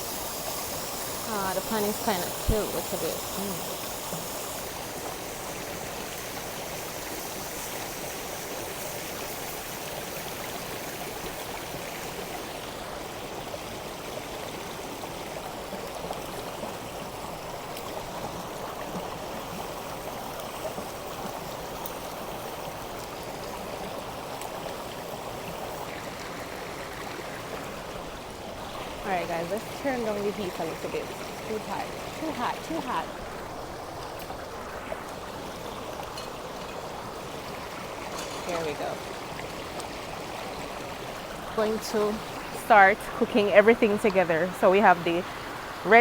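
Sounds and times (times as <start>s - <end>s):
river rushing: 21.0s - 46.0s.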